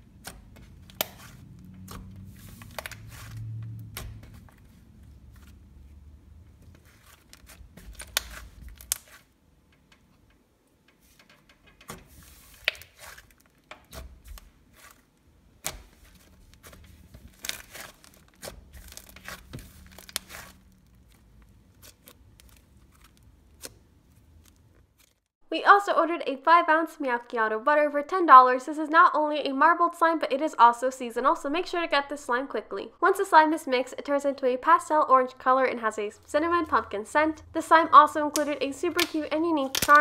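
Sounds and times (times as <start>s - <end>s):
slime being squished by hand: 6.8s - 9.3s, 12.5s - 25.3s
slime clicks and crackly pops: 38.4s - 40.0s.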